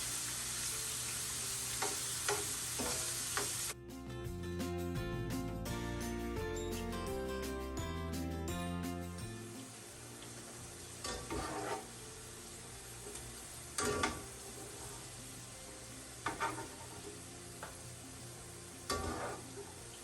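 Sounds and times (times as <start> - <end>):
beans sizzling in oil: 0.0 - 3.8, 9.3 - 20.0
stirring scrapes in pan: 11.0 - 12.1, 13.8 - 15.2, 16.2 - 17.2, 18.8 - 19.8.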